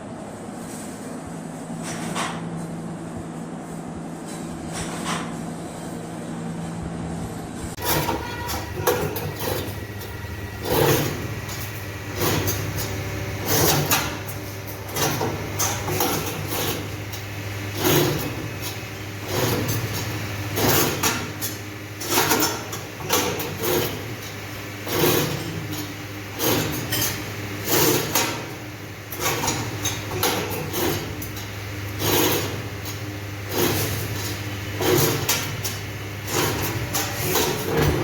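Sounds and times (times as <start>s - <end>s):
machine motor hum: 5.8s - 38.0s
metallic clanks and clatter: 7.8s - 28.5s.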